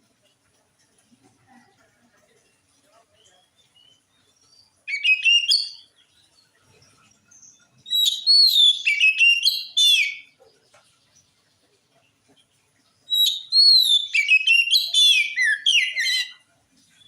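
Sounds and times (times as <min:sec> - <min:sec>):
bird singing whistled notes: 0:03.6 - 0:05.9, 0:07.3 - 0:10.3, 0:13.1 - 0:16.4.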